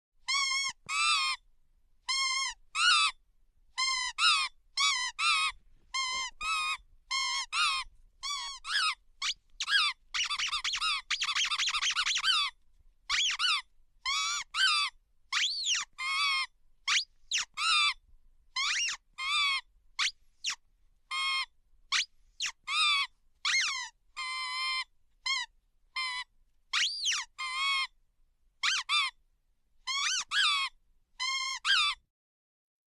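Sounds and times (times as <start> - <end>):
high-pitched squeaks: 6.0 - 12.5, 13.1 - 14.8, 18.6 - 19.0, 23.5 - 23.8.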